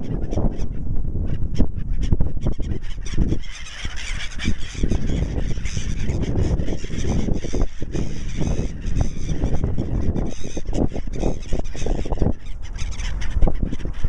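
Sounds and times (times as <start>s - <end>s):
steady low rumble: 0.0s - 3.0s
birds calling: 0.0s - 14.0s.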